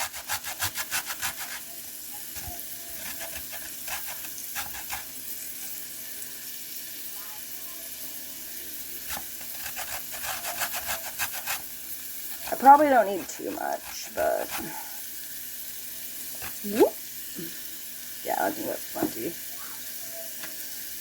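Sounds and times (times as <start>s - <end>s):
ginger being grated: 0.0s - 5.7s, 9.0s - 15.2s, 16.2s - 17.4s
onions and meat sizzling in a pan: 0.0s - 21.0s.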